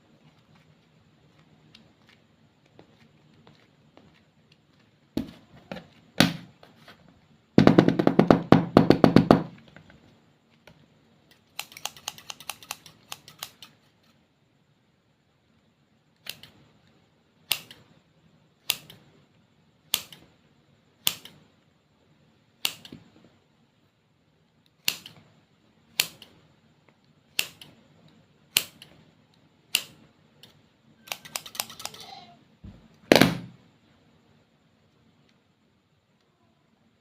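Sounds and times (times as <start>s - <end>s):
sharp clicks: 11.3s - 13.8s, 29.7s - 32.0s.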